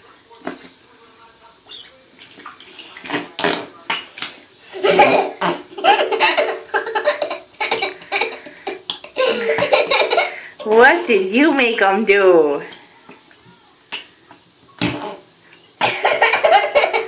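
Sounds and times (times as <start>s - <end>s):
bath water splashing and bubbling: 2.1s - 11.6s.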